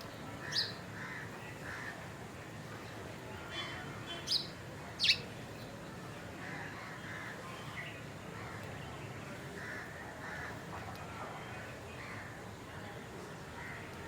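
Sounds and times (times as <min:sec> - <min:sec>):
high bird calls: 0:00.4 - 0:00.8, 0:04.1 - 0:05.3.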